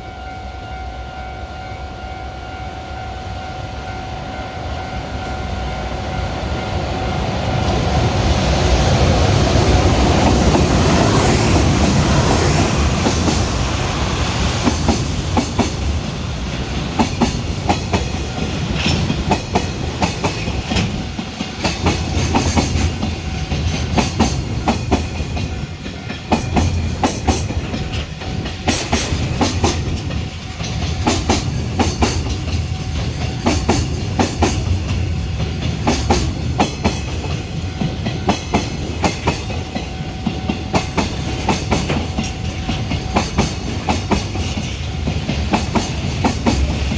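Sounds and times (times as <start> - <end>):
freight train rumble: 0.0 - 46.9
wagon wheels clickety-clack: 16.6 - 46.9.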